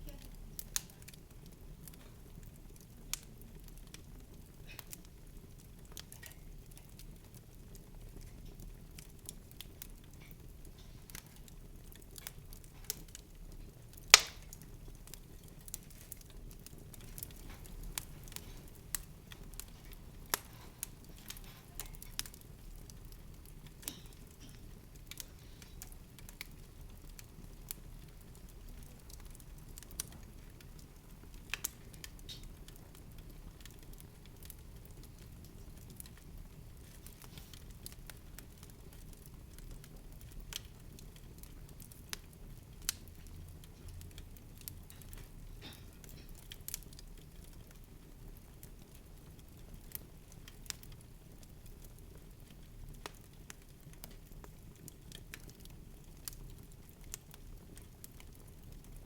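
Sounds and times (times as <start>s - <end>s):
small clicks and crackles: 0.0s - 59.0s
sharp snap: 14.1s - 14.5s.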